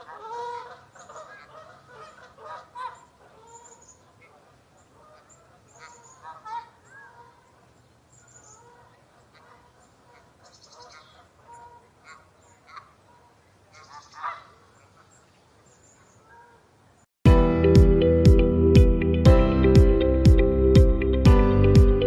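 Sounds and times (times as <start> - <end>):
geese honking: 0.0 - 7.4, 8.5 - 15.1
music: 17.2 - 22.0.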